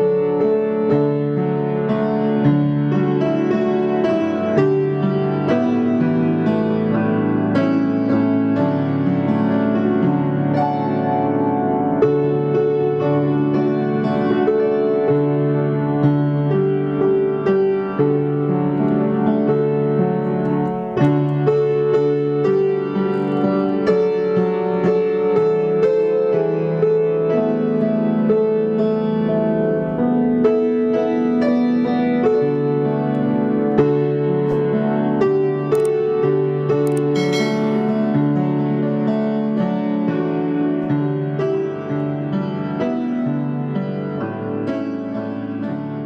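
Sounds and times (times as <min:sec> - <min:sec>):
slow keyboard chords: 0:35.8 - 0:38.5.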